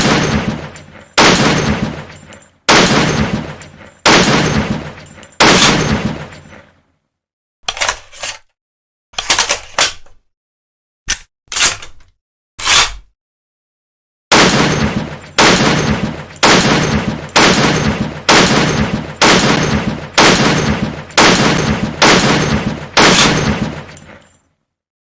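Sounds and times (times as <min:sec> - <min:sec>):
rifle shots: 0:00.0 - 0:06.5, 0:14.3 - 0:24.2.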